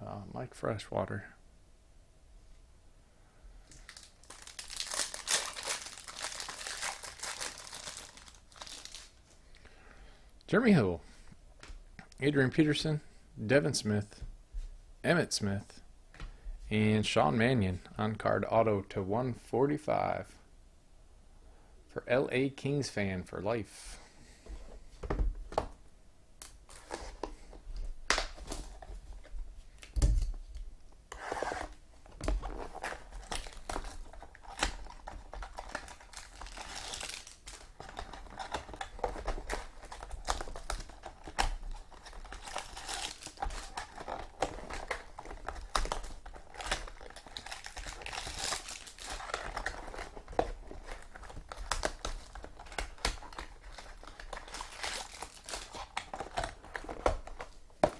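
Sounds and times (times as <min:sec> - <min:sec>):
card wrappers torn and crinkled: 0:03.7 - 0:09.2, 0:32.3 - 0:57.9.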